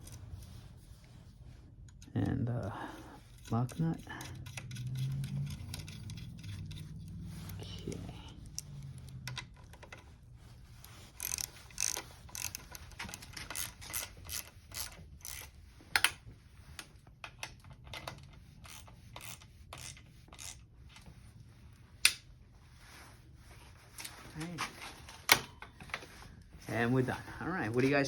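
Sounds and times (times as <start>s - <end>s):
metallic clicks and ratcheting: 3.4s - 10.1s, 11.1s - 16.2s, 17.4s - 20.6s.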